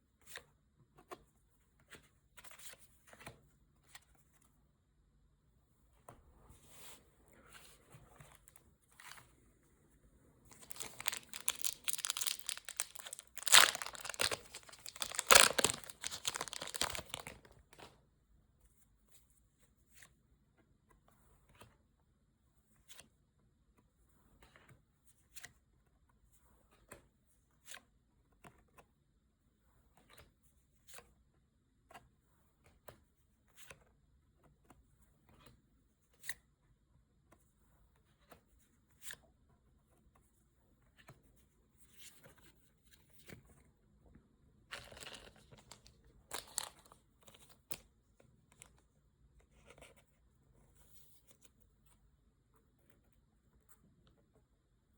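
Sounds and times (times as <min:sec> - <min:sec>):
foil wrapper tearing and crinkling: 0:10.5 - 0:17.4, 0:46.3 - 0:46.8.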